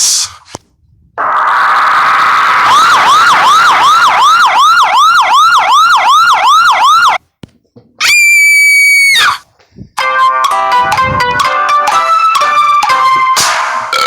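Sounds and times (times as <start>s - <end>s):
alarm siren whooping: 1.2s - 7.2s, 10.2s - 13.6s.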